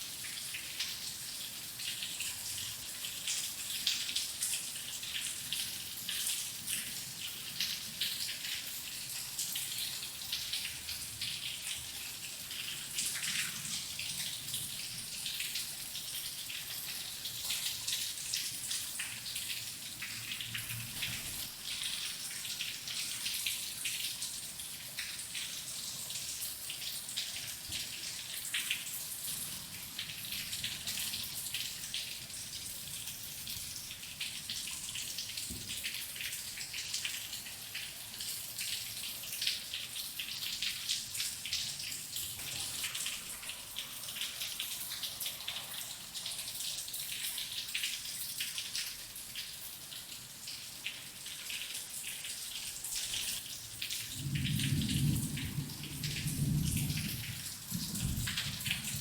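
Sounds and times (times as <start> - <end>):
rain falling: 0.1 - 59.0
low rumble of thunder: 54.0 - 59.0.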